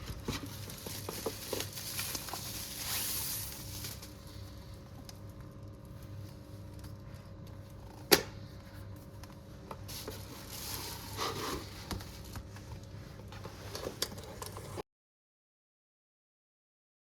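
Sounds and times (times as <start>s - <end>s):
packaging rustling: 0.0s - 4.5s, 9.9s - 12.5s
steady low hum: 0.0s - 14.8s.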